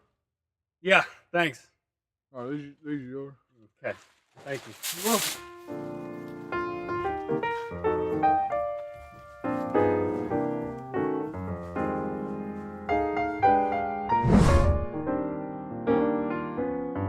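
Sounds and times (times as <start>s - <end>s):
piano chords: 5.5s - 17.0s.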